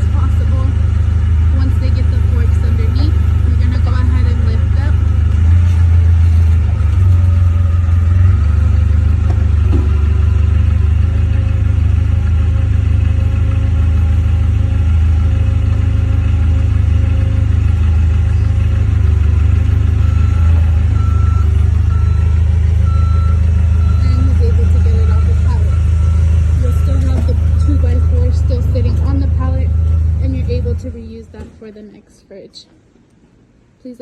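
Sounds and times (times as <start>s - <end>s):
forklift engine running: 0.0s - 32.0s
reversing alarm beeps: 20.0s - 30.8s.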